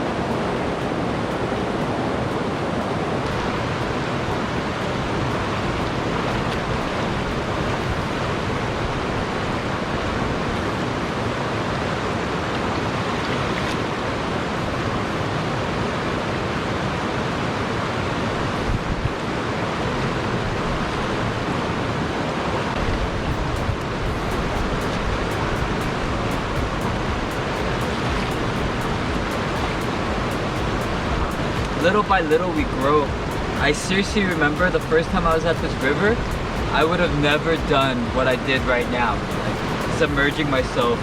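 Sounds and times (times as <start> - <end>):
river water rushing: 0.0 - 41.0.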